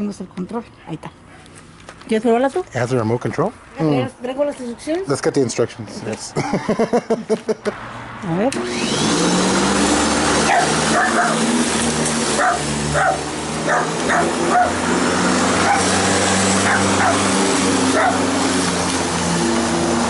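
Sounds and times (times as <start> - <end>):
electric lawnmower motor humming: 8.5 - 20.0
dogs barking and yipping: 10.3 - 18.9.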